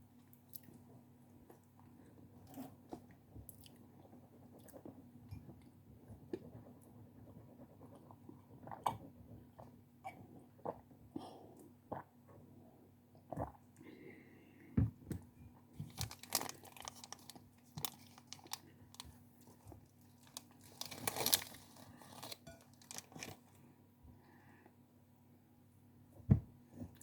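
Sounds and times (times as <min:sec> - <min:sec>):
crunching and chewing: 0:15.8 - 0:23.6
wrapper crinkling and tearing: 0:15.9 - 0:19.0, 0:20.1 - 0:23.5.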